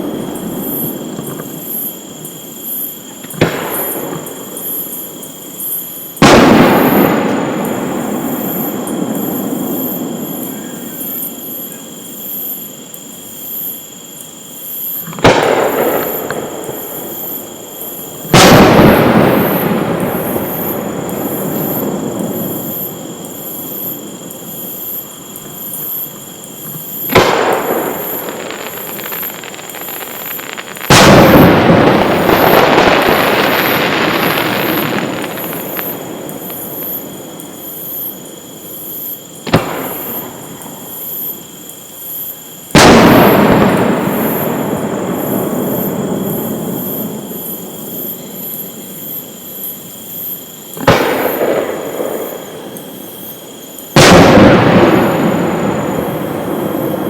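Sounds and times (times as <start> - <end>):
fireworks booming: 0.0 - 12.1, 14.8 - 41.6, 42.6 - 49.2, 50.7 - 57.0
fireworks crackling: 2.6 - 11.1, 14.8 - 38.2, 38.9 - 41.3, 42.7 - 48.0.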